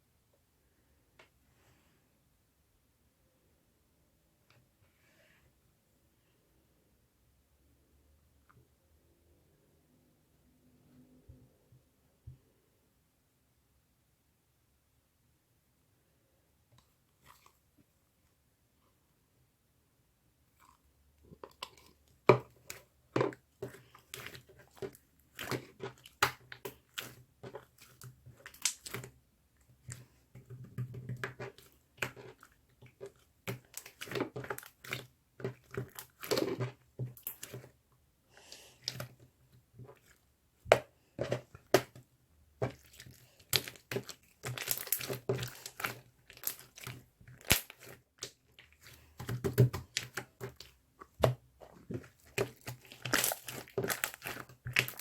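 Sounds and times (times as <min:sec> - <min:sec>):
crinkling and crackling with clicks: 0:20.6 - 0:55.0.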